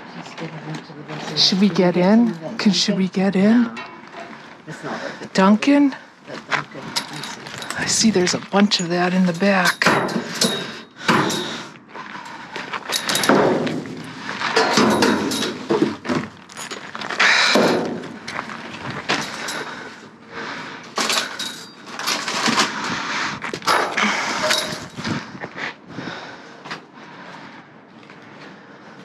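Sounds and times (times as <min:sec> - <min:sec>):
objects clunking in a dumpster: 0:09.7 - 0:11.7, 0:12.8 - 0:19.9, 0:20.9 - 0:25.2.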